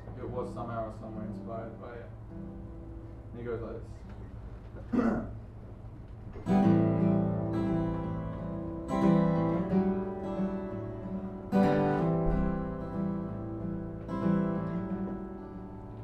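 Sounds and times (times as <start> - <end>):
acoustic guitar strummed chords: 6.4 - 16.0.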